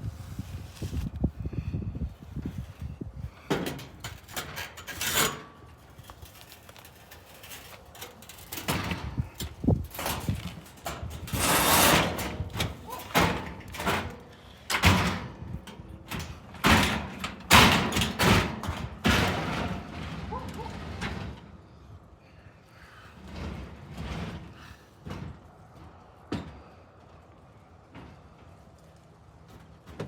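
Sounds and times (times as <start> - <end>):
objects scraping and sliding: 0.0 - 1.2, 3.5 - 14.6, 19.0 - 21.8
objects banging and clattering: 3.4 - 21.5.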